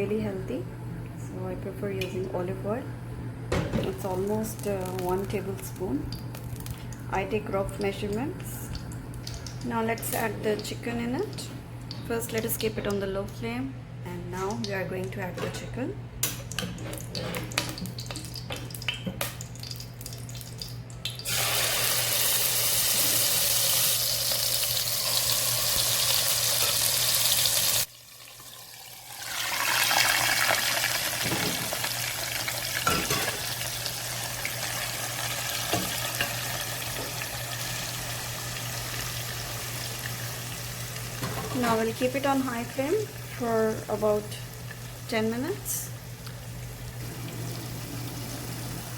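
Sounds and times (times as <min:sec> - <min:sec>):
chicken sizzling in frying pan: 0:21.2 - 0:45.1.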